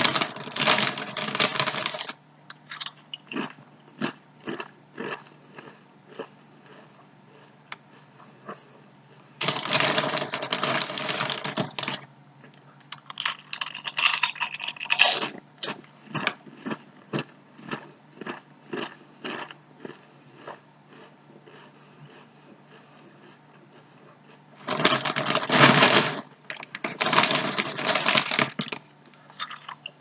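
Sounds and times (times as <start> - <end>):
chip bag crinkling: 0.0 - 5.2, 9.4 - 12.1, 12.8 - 19.4, 24.6 - 30.0
chewing crunchy chips: 0.0 - 30.0.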